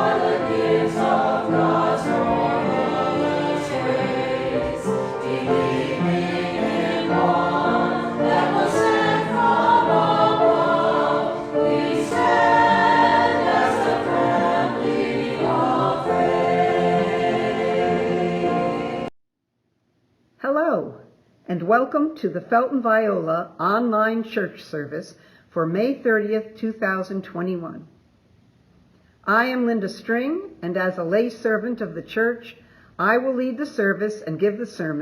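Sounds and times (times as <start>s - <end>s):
choir singing church music: 0.0s - 19.1s.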